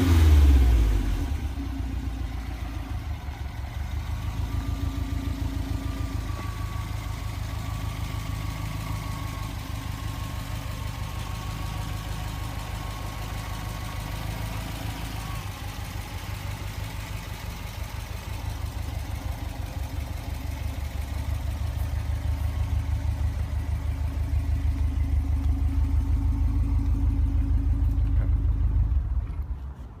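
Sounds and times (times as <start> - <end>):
car engine idling: 0.0 - 30.0.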